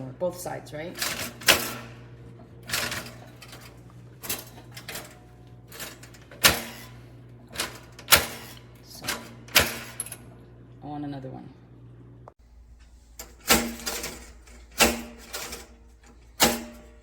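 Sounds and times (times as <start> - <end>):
steady low hum: 0.0 - 17.0
toaster lever clacking: 1.0 - 2.0, 2.6 - 10.2, 13.2 - 17.0.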